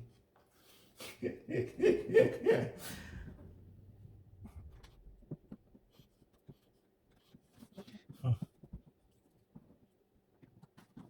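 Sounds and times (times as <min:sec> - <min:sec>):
man laughing: 0:01.0 - 0:03.5.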